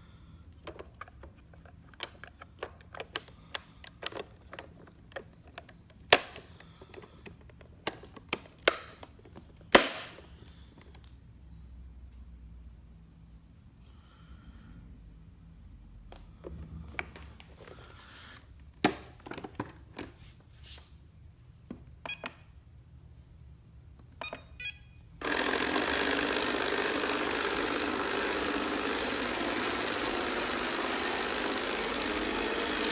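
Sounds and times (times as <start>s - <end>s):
robot vacuum hissing mechanical noise: 25.2s - 32.9s.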